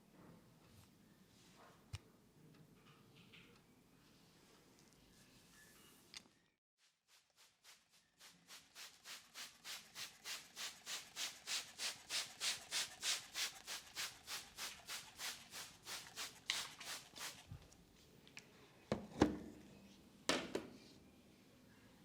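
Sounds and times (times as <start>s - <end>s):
hands rubbing hair: 7.1s - 17.5s.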